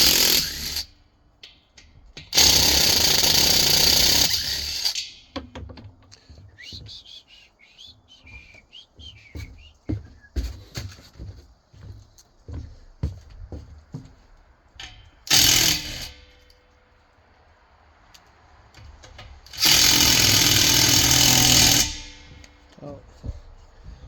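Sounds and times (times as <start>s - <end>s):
power tool running: 0.0s - 0.9s, 2.4s - 5.0s, 15.3s - 16.2s, 19.5s - 22.3s.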